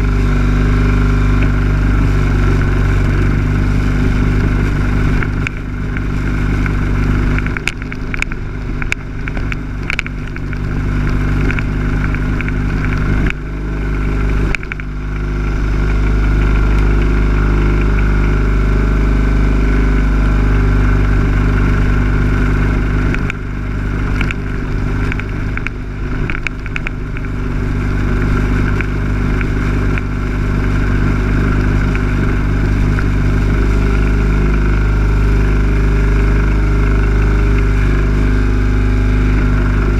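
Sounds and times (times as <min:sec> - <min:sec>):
lawn mower engine running: 0:00.0 - 0:39.9
sharp clicks and knocks: 0:01.3 - 0:18.4, 0:21.2 - 0:34.0.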